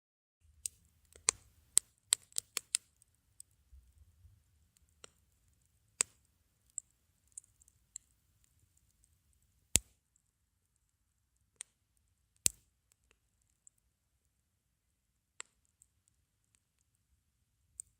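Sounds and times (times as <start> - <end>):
wood fire crackling and popping: 0.4 - 10.0, 11.6 - 13.8.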